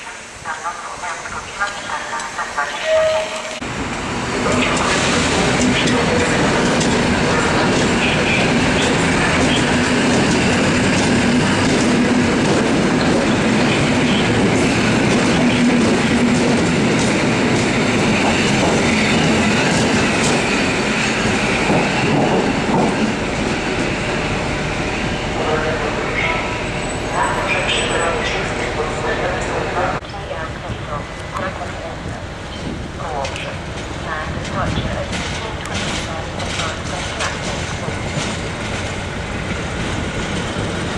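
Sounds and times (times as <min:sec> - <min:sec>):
loud train rumble: 0:00.0 - 0:40.9
train wheels clacking over rail joints: 0:04.5 - 0:23.9, 0:33.2 - 0:40.9.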